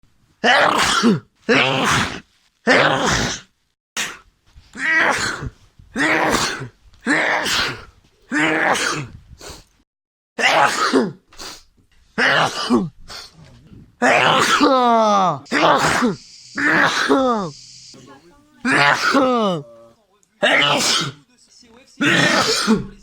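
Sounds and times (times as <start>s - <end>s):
person sneezing loudly: 0.4s - 4.2s, 4.8s - 9.2s, 10.4s - 13.0s, 14.0s - 17.6s, 18.7s - 19.8s, 20.4s - 21.2s, 22.0s - 23.0s.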